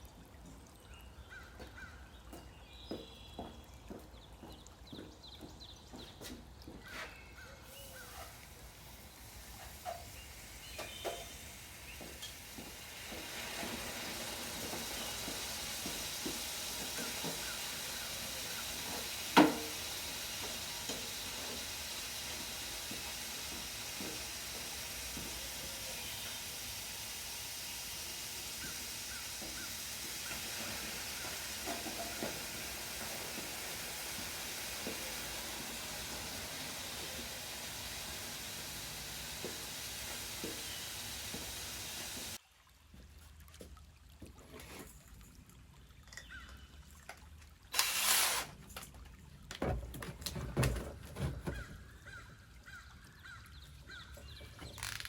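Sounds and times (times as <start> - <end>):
hot metal sizzling hiss: 7.6 - 42.4.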